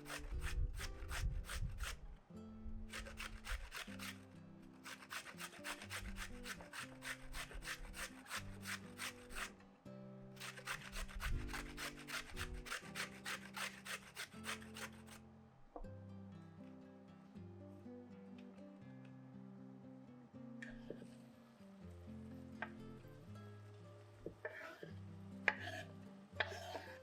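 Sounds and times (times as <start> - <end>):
rasping on a wooden board: 0.0 - 2.0, 2.9 - 4.2, 4.8 - 9.5, 10.4 - 15.2
soft background music: 0.0 - 27.0.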